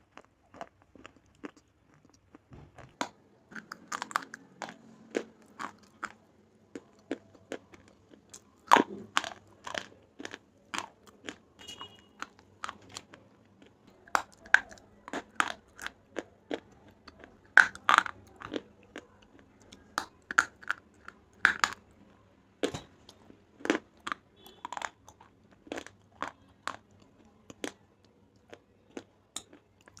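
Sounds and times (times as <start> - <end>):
chewing crunch: 0.0 - 30.0.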